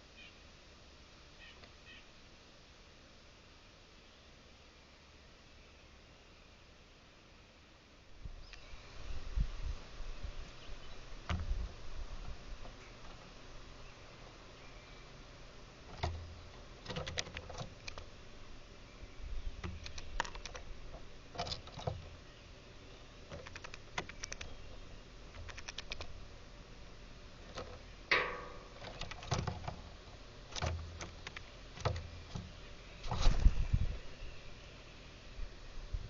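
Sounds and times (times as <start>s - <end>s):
rustle: 0.0s - 36.0s
birds pecking and cracking seed: 15.8s - 18.2s, 19.5s - 22.3s, 23.2s - 26.3s, 27.3s - 33.5s
knocks: 28.1s - 29.7s.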